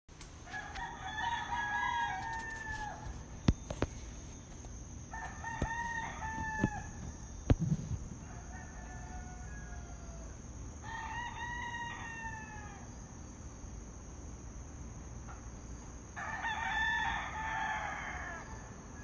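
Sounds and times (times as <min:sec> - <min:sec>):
roosters crowing: 0:00.4 - 0:13.5, 0:15.9 - 0:19.0.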